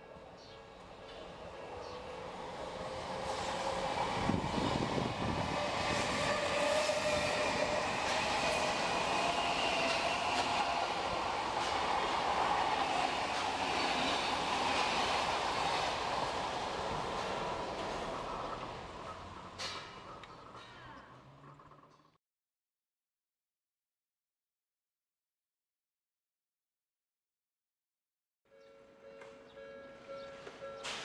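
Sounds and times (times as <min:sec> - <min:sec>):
train rumbling past: 0:00.0 - 0:22.1
wheels clicking over rail joints: 0:05.9 - 0:22.1, 0:30.4 - 0:31.0.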